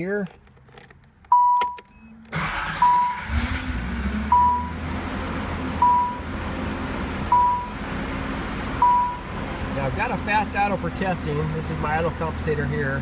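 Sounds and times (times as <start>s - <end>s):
car engine starting and idling: 0.0s - 13.0s
car warning chime dinging: 1.3s - 3.3s, 4.3s - 4.8s, 5.8s - 6.3s, 7.3s - 7.8s, 8.8s - 9.3s.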